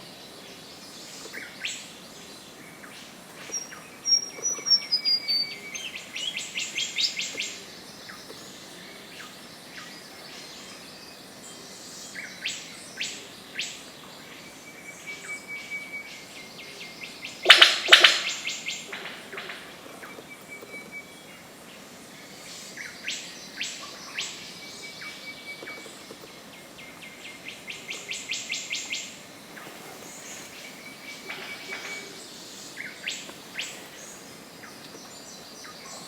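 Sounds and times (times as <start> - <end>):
birds calling: 17.1 - 21.9, 22.7 - 36.0.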